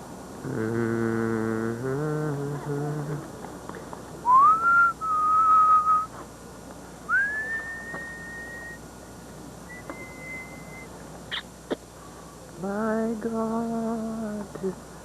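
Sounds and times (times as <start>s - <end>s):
person whistling: 4.3s - 6.1s, 7.1s - 8.8s, 9.7s - 10.9s.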